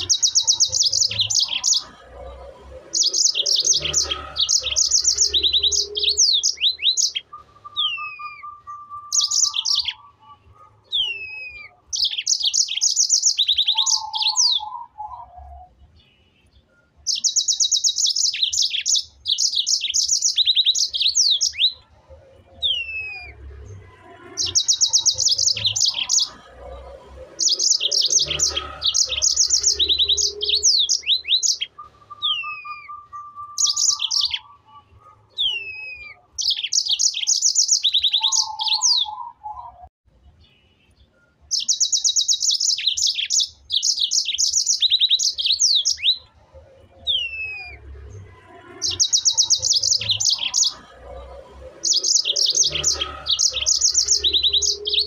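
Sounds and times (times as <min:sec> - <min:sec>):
songbird trilling and whistling: 0:00.0 - 0:02.2, 0:02.8 - 0:15.8, 0:16.7 - 0:39.9, 0:41.5 - 0:48.1, 0:48.7 - 0:55.0.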